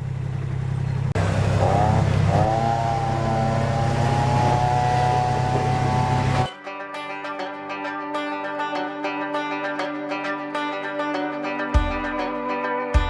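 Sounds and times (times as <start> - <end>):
diesel engine running: 0.0 - 6.5.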